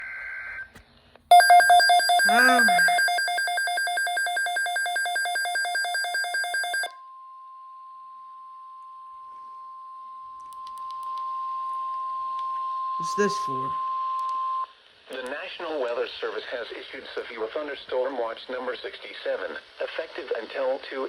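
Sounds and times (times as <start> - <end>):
electronic alarm beeping rapidly: 1.3 - 6.9
steady alarm tone: 1.3 - 7.0.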